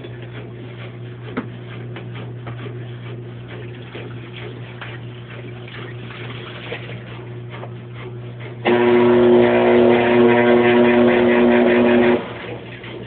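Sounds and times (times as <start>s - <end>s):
machine motor humming: 8.6s - 13.0s.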